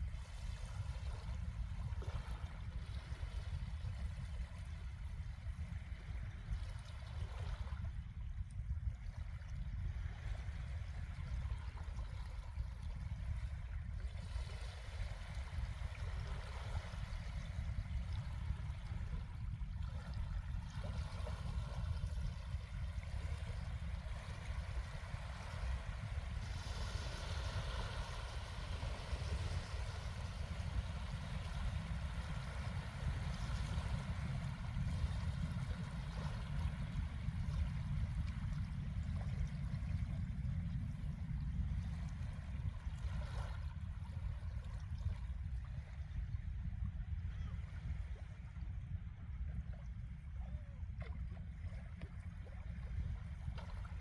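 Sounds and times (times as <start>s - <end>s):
small waves washing on sand: 19.9s - 40.2s.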